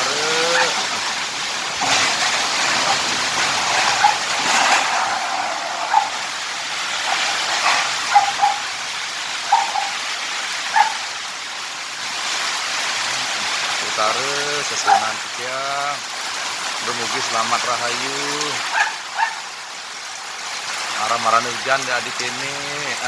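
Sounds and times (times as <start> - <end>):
rain: 0.0 - 23.0
dog barking: 0.4 - 0.8, 3.8 - 4.3, 5.9 - 6.2, 8.0 - 8.7, 9.4 - 10.0, 10.7 - 11.1, 14.8 - 15.2, 18.7 - 19.5
strong wind: 0.6 - 11.1.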